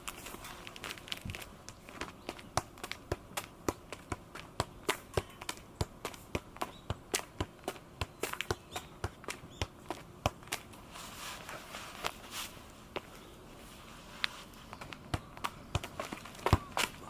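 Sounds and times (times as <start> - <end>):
football tapping on foot: 1.3 - 10.7, 14.7 - 17.0.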